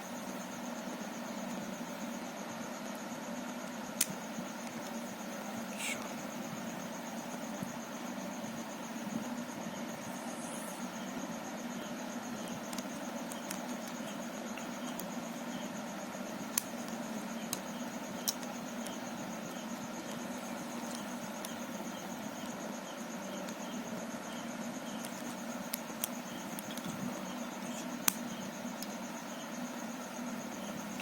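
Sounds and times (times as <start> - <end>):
high-pitched whine: 0.0 - 31.0.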